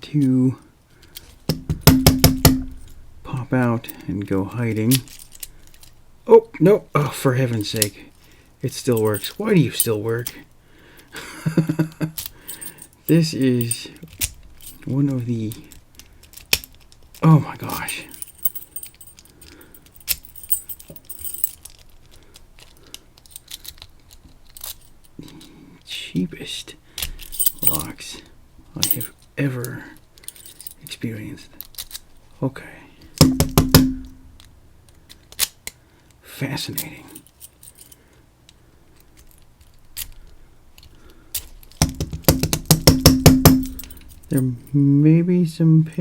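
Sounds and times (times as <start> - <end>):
metal keys jingling: 2.6 - 3.1, 4.9 - 5.9, 8.8 - 10.4, 12.2 - 14.9, 17.7 - 22.0, 23.2 - 25.4, 27.2 - 28.0, 28.8 - 29.3, 30.2 - 30.9, 36.8 - 38.0, 43.4 - 44.8.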